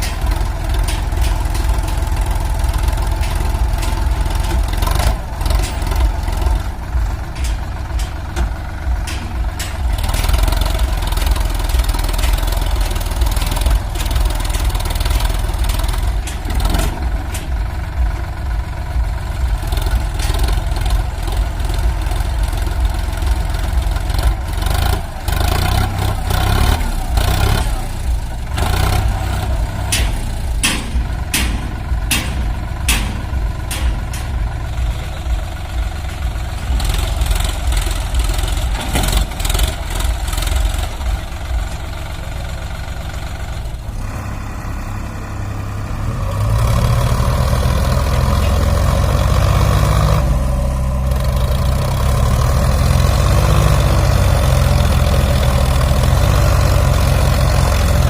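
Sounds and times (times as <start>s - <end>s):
heavy diesel engines straining: 0.0s - 58.0s
sharp knocks: 28.6s - 35.0s.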